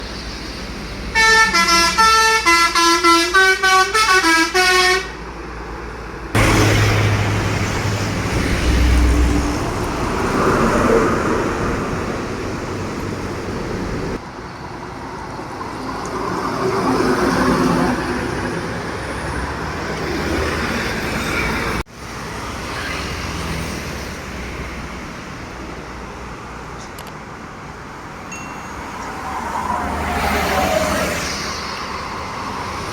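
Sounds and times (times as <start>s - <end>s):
heavy trucks driving past: 0.0s - 25.9s, 27.9s - 32.9s
truck trumpet horn playing a tune: 1.2s - 5.2s.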